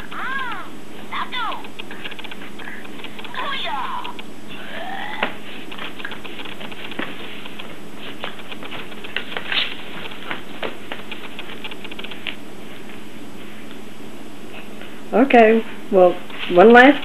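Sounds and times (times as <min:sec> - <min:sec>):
puppy gnawing with teeth clicking: 0:01.4 - 0:04.3, 0:05.7 - 0:12.4.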